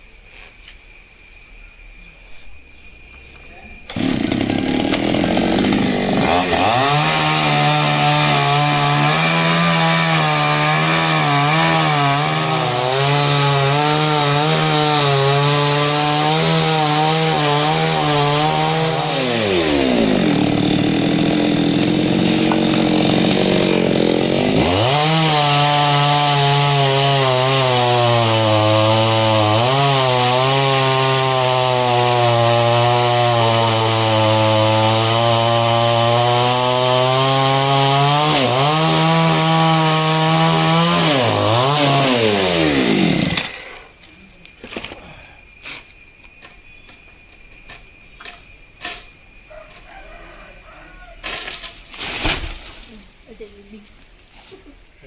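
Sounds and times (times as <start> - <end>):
chainsaw cutting wood: 3.9 - 44.0, 47.6 - 49.1, 51.2 - 52.9.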